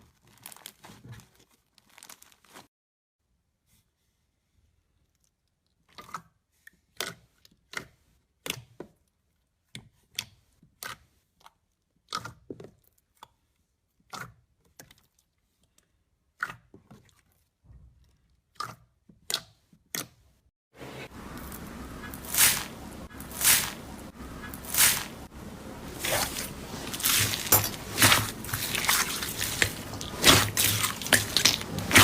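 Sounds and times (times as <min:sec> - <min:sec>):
slime crackling and popping: 0:26.0 - 0:32.0.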